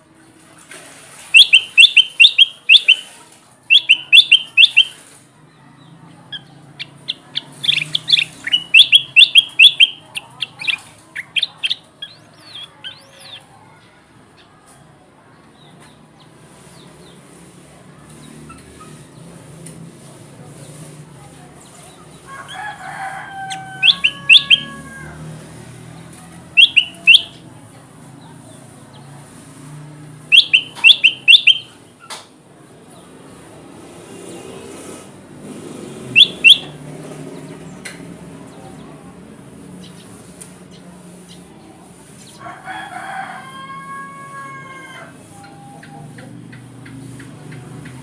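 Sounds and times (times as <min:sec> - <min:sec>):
bulbul chirping: 0:01.4 - 0:03.0, 0:03.7 - 0:05.0, 0:06.4 - 0:13.4, 0:23.8 - 0:24.7, 0:26.6 - 0:27.4, 0:30.3 - 0:31.8, 0:36.2 - 0:36.7
rooster crowing: 0:22.3 - 0:25.4, 0:42.4 - 0:45.9.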